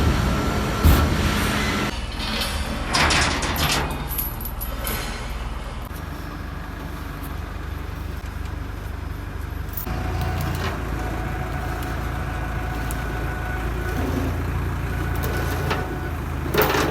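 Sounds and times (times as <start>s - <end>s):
heavy machinery low hum: 0.0s - 16.9s
steady whine: 5.8s - 16.9s.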